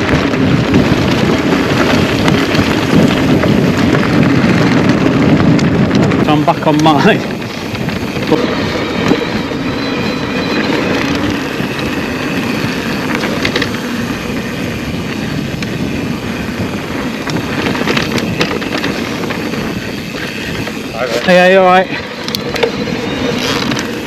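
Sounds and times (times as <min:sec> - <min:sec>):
bike rattles and clicks: 0:00.0 - 0:24.0
tyres rushing over rough ground: 0:00.0 - 0:24.0
wind on microphone: 0:00.0 - 0:24.0
faint electric motor whine: 0:06.6 - 0:24.0.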